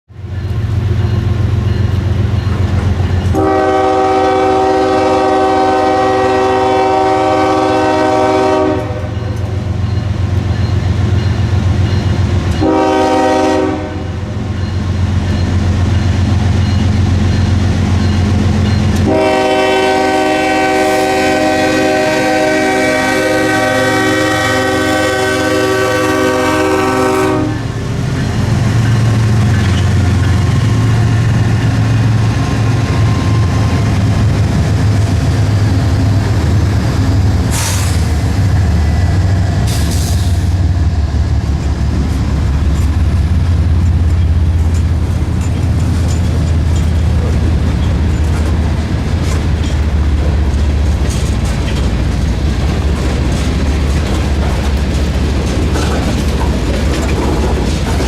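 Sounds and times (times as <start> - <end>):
freight train rumbling past: 0.1 - 58.0
hissing bursts: 37.4 - 38.4
sharp clacks: 43.8 - 58.0.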